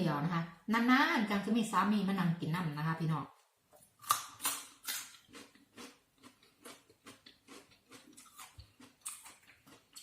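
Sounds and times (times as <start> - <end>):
faint chewing: 3.7 - 10.0.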